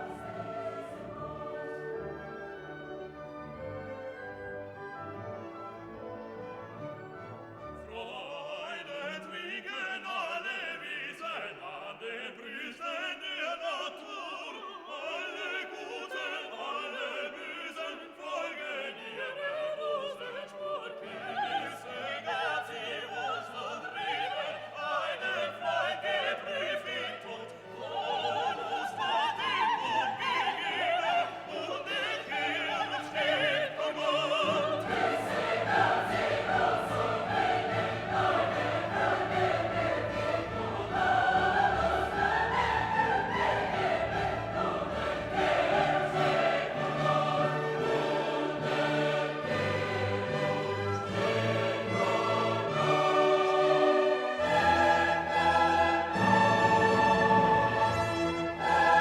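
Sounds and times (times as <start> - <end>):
orchestra playing: 0.0 - 8.0, 33.4 - 59.0
operatic choral singing: 0.0 - 59.0.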